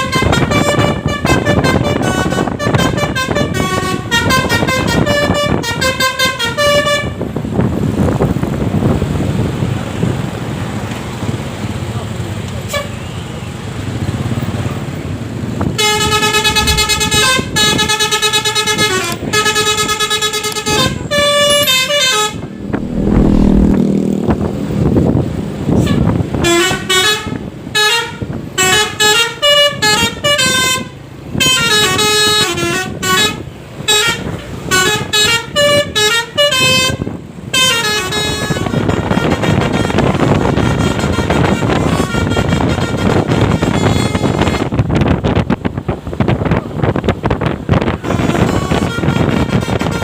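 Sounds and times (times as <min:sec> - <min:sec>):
bus horn playing a tune: 0:00.0 - 0:07.3, 0:15.6 - 0:22.6, 0:25.8 - 0:44.9, 0:47.9 - 0:50.0
road noise: 0:00.0 - 0:50.0
low engine rumble: 0:15.6 - 0:18.1, 0:22.1 - 0:25.5.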